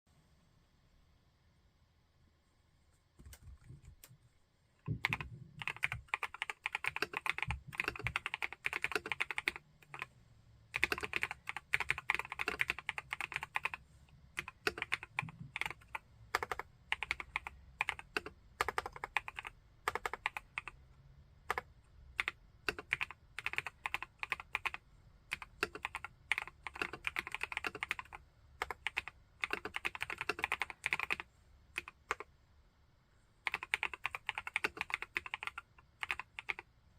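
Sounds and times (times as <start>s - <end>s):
typing on mechanical keyboard: 4.8s - 10.1s, 10.7s - 13.8s, 14.4s - 20.8s, 21.5s - 32.3s, 33.4s - 36.7s.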